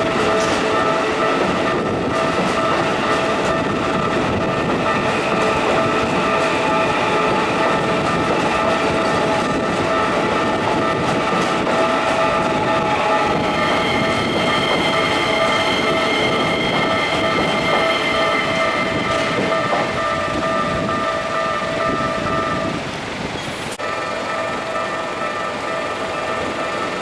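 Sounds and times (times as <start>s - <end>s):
level crossing warning bell: 0.0s - 22.9s, 23.8s - 27.0s
train wheels clattering on rails: 0.0s - 27.0s.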